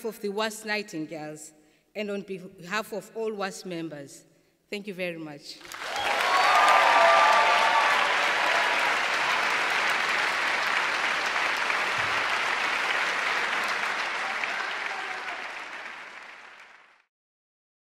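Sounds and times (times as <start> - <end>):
voices cheering: 5.6 - 16.7
audience applauding: 5.6 - 17.1.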